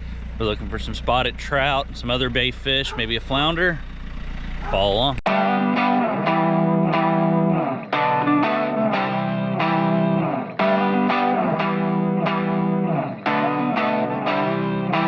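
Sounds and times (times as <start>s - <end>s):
distorted electric guitar music: 5.3s - 15.0s.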